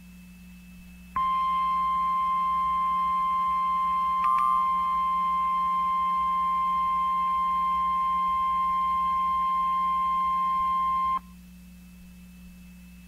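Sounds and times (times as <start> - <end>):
faint radio hum and hiss: 0.0 - 13.0
high piercing alarm tone: 1.2 - 11.2.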